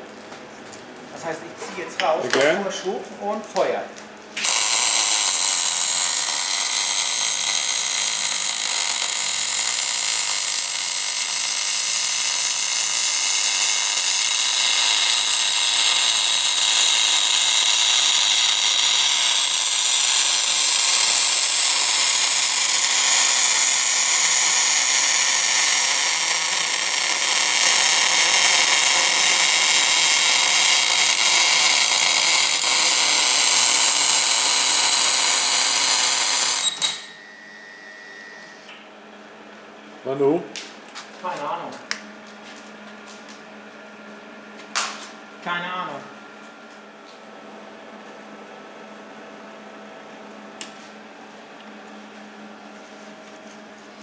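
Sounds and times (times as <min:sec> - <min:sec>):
welding arc hissing: 0:04.4 - 0:36.7.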